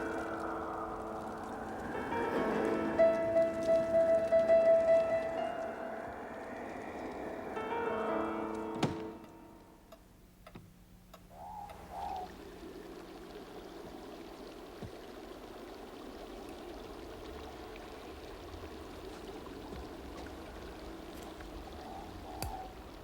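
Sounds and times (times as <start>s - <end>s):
wind rushing: 0.0s - 9.7s
wavering wind moan: 0.0s - 9.9s.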